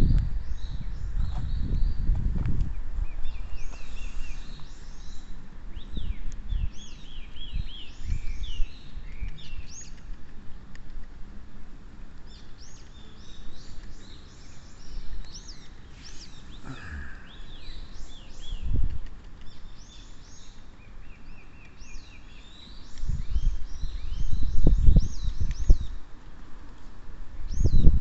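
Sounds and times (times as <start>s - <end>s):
songbirds chirping and singing: 0.0s - 10.7s, 12.0s - 26.2s.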